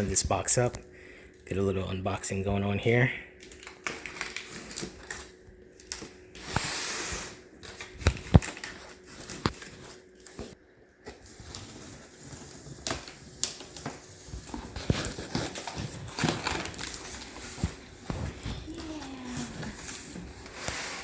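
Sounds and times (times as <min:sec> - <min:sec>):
cardboard rustling: 0:08.2 - 0:21.0
cardboard tearing: 0:11.2 - 0:21.0.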